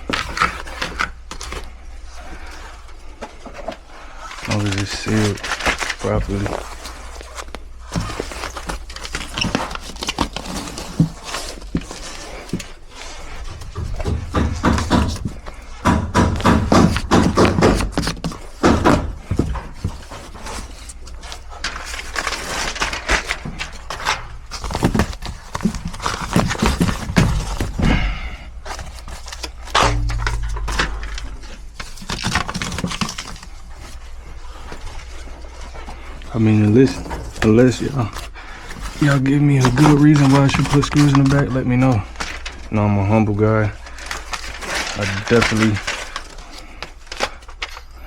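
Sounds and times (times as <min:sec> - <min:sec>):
hands working on sheet metal: 0:00.0 - 0:42.7
knocks and scrapes on ductwork: 0:00.0 - 0:42.7
steady low hum: 0:06.2 - 0:38.8.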